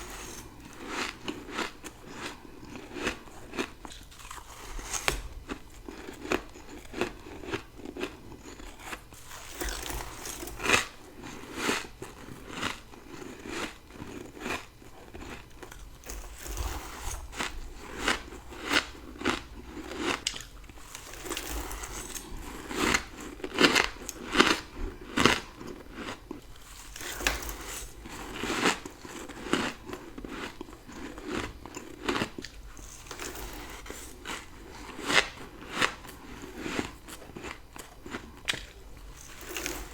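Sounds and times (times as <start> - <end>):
crunching frost being chewed: 0.0 - 39.9.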